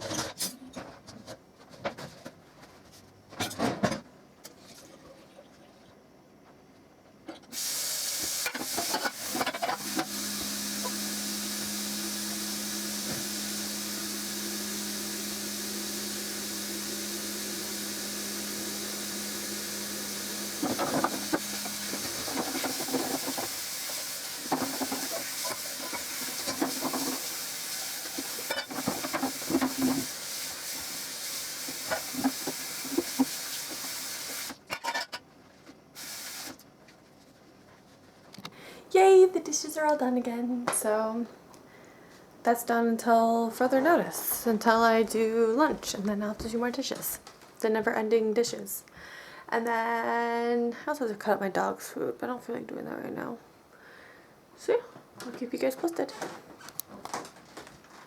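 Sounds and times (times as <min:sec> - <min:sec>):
faucet running into sink: 0:07.5 - 0:34.6
dishes clinking and clattering: 0:20.6 - 0:30.0.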